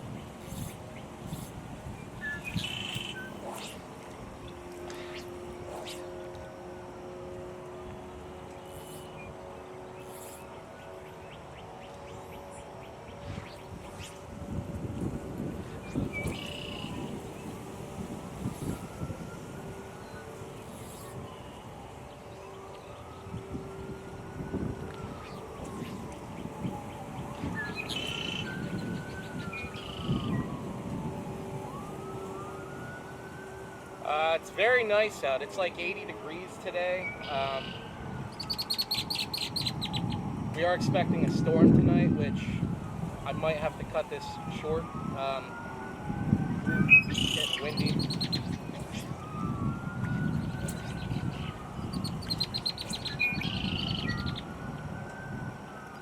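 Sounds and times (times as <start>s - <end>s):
birds chirping: 0.0s - 6.6s, 7.8s - 14.3s, 15.5s - 17.8s, 25.0s - 30.6s, 36.2s - 40.3s, 43.1s - 54.6s
wind buffeting microphone: 0.0s - 34.0s, 36.2s - 56.0s
siren wailing: 0.0s - 56.0s.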